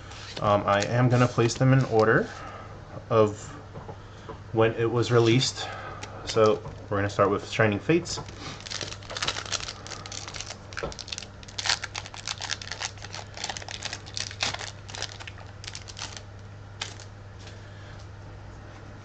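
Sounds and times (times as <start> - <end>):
steady low hum: 0.0 - 19.0
foil wrapper tearing and crinkling: 8.3 - 17.1.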